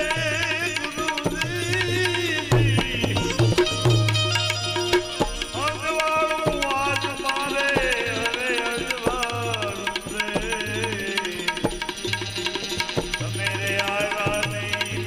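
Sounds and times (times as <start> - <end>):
sliding instrumental melody: 1.9 - 9.1.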